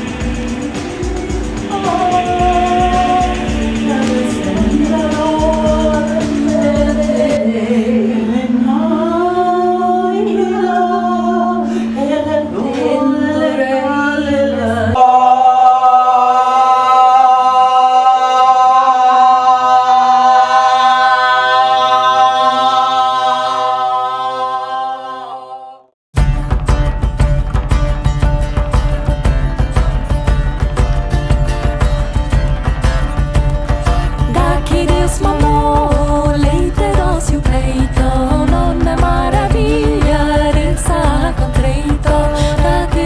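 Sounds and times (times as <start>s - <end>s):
low drone: 0.0s - 25.6s
voices singing wordless notes: 0.0s - 25.9s, 34.2s - 43.0s.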